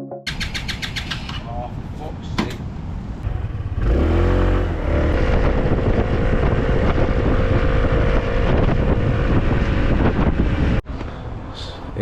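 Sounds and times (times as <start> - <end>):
wind rumbling on microphone: 4.6 - 12.0.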